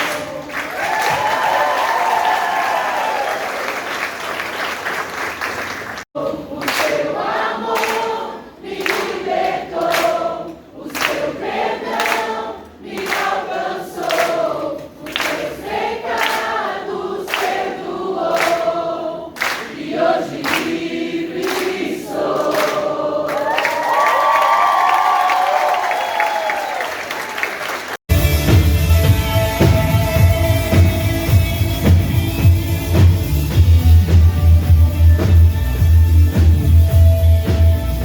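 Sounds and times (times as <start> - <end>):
applause: 0.0 - 7.0, 15.1 - 15.4, 17.3 - 17.6, 19.4 - 19.8, 20.4 - 20.8, 22.4 - 28.1
group singing worship song: 6.2 - 23.5.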